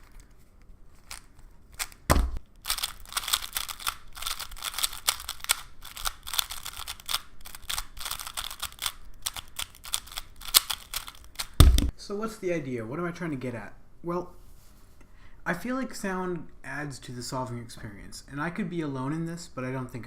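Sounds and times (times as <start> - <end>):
speed cube clicking: 2.6 - 11.6.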